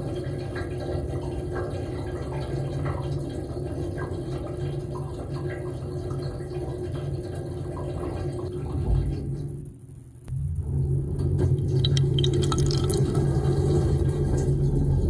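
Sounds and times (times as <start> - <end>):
dishwasher pump hum: 0.0 - 9.8, 10.4 - 15.0
water spattering and splashing: 11.6 - 14.7.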